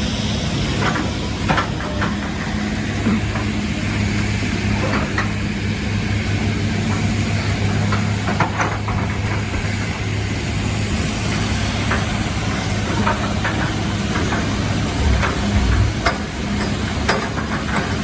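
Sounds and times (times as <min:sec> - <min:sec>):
heavy vehicle engine running: 0:00.0 - 0:18.0
metallic knocks: 0:13.0 - 0:17.9.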